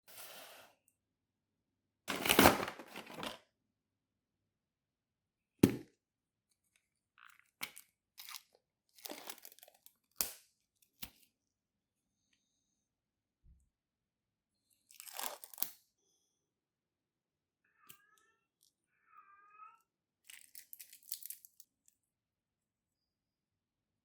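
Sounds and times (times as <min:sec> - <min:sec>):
packaging ripping: 0:02.1 - 0:03.4
wrapping crinkling: 0:02.1 - 0:03.4.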